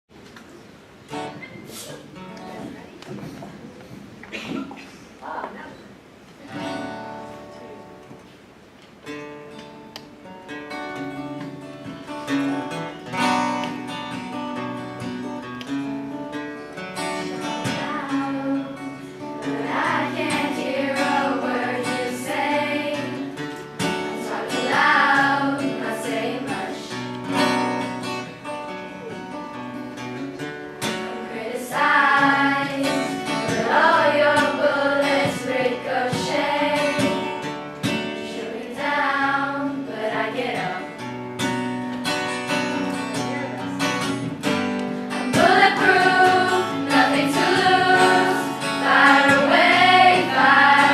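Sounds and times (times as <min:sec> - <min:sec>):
acoustic guitar: 0:00.1 - 0:50.9
choir singing: 0:17.6 - 0:27.0, 0:31.0 - 0:37.4, 0:38.0 - 0:41.0, 0:45.3 - 0:50.9.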